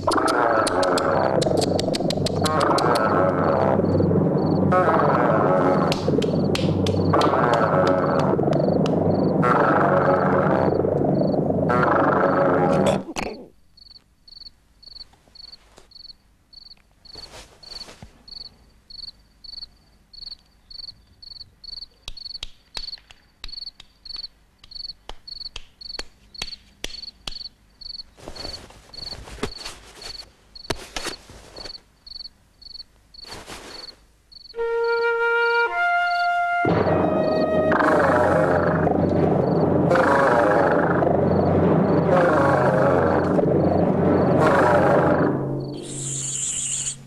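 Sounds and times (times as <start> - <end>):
cricket chirping: 0.0 - 4.8, 5.7 - 9.4, 10.0 - 11.5, 13.7 - 47.0
soft rustling: 15.0 - 16.1, 17.0 - 18.6, 28.0 - 31.9, 33.1 - 34.1.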